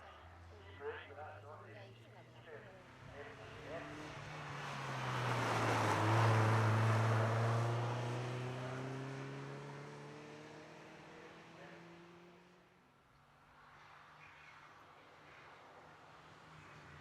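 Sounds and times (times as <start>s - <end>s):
car engine accelerating: 0.0s - 12.6s.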